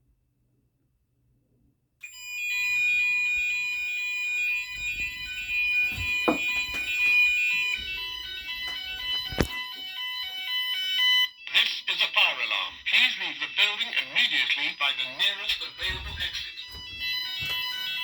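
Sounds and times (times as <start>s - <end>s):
pulsing alarm tones: 2.0s - 11.4s
steady high fire alarm tone: 2.0s - 18.0s
sharp knocks: 5.9s - 6.9s.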